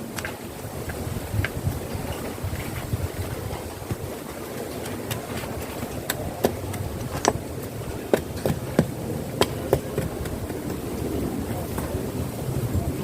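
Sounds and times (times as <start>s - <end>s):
background hiss: 0.0s - 13.0s
hand tools knocking on wood: 4.8s - 10.9s.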